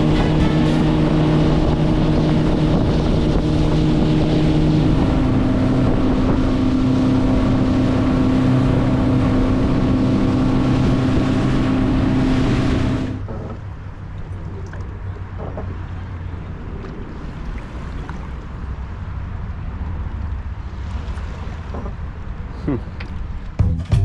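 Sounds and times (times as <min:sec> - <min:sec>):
wind noise on microphone: 0:00.0 - 0:13.6
vehicle engine running: 0:00.0 - 0:13.8.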